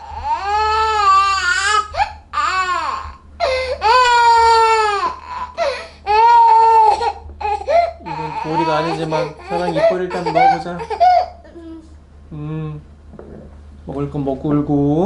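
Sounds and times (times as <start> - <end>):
baby crying: 0.0 - 11.9.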